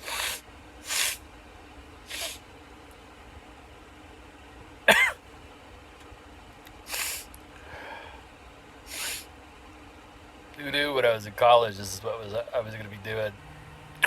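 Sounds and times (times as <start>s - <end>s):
man sniffing: 0.0s - 1.2s, 2.1s - 2.4s, 6.9s - 8.1s, 8.9s - 9.3s
man sneezing: 4.9s - 5.2s, 6.9s - 7.3s.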